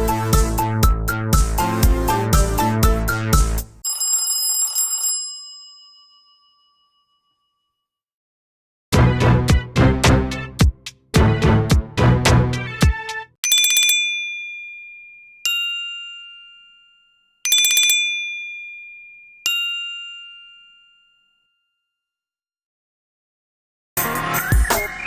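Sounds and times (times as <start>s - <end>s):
two-note electronic bell ringtone: 13.4s - 22.0s.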